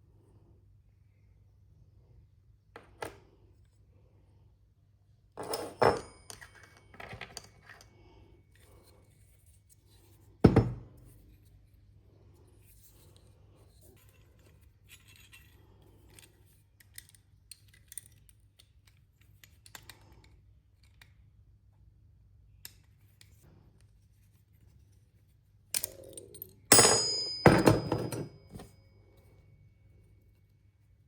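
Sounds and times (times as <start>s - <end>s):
small parts clicking: 14.0s - 21.3s
metallic ringing: 26.7s - 28.7s.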